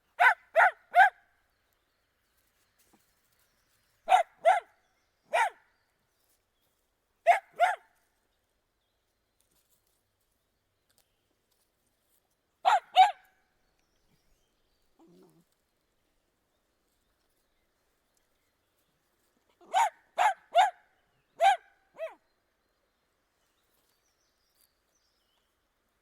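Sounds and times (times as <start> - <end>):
dog barking: 0.2 - 1.2, 4.1 - 4.7, 5.3 - 5.6, 7.2 - 7.9, 12.6 - 13.3, 19.6 - 22.2.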